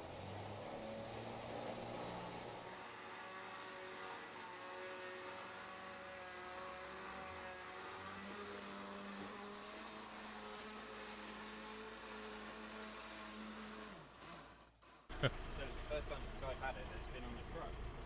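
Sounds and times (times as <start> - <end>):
truck mechanical hum: 15.1 - 18.0.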